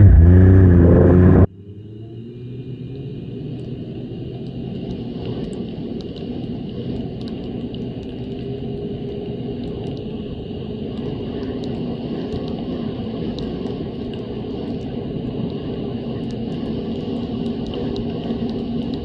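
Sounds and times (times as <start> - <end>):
snowmobile engine running: 0.0 - 1.5
high whine: 0.0 - 3.4.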